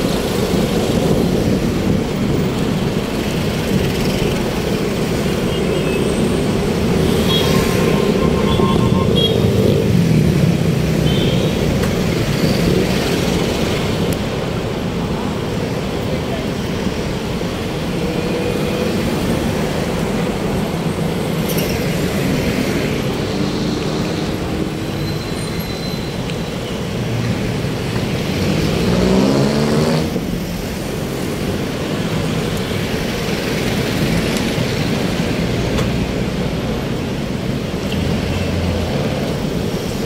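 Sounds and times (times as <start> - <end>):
rumble of passing vehicles: 0.0 - 40.0
engine revving: 28.4 - 30.3.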